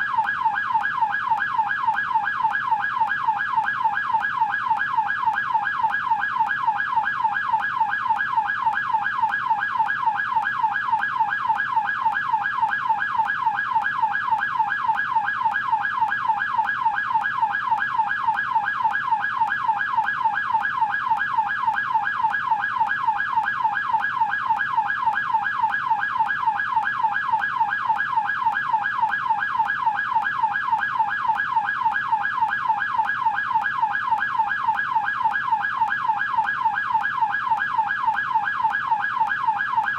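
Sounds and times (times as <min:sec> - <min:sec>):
police siren yelping: 0:00.0 - 0:39.9.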